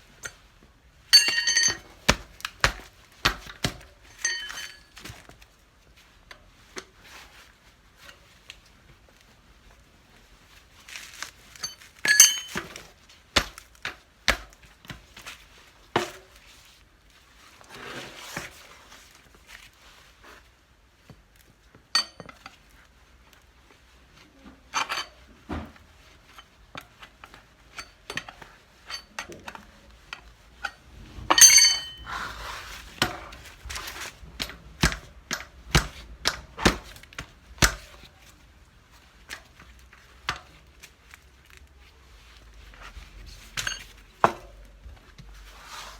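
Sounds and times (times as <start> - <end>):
metallic clinks of hand tools: 1.2 - 1.8, 4.2 - 4.9, 31.3 - 32.0
metal clatter: 1.2 - 1.9, 4.1 - 5.0, 11.6 - 12.7, 30.6 - 32.0.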